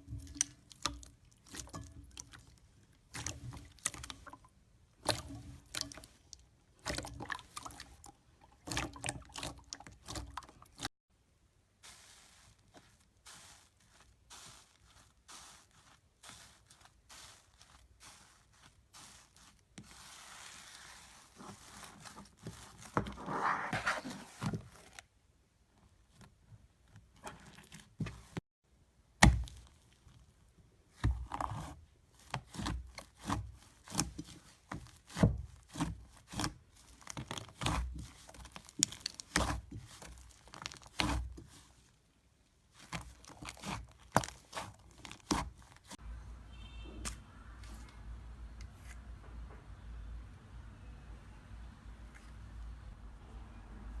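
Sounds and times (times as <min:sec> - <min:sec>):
slime sticky crackling: 0:32.3 - 0:41.7, 0:42.7 - 0:46.0.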